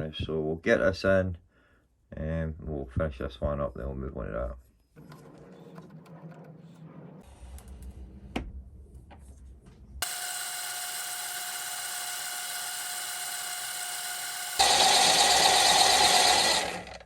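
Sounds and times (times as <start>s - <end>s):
lathe motor running: 10.0s - 17.0s.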